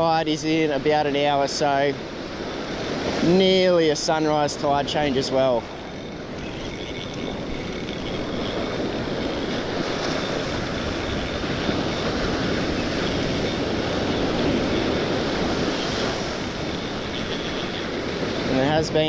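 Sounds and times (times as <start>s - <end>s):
ocean surf rushing: 0.0s - 19.0s.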